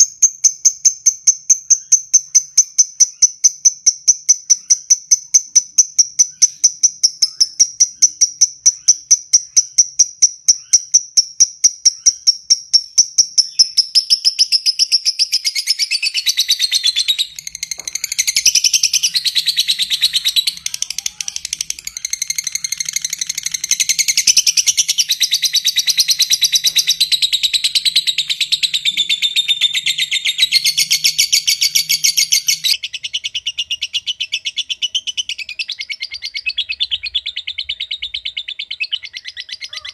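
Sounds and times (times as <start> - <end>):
lovebird high ticking calls: 0.0 - 39.9
lovebird shrill chattering trill: 1.7 - 33.6.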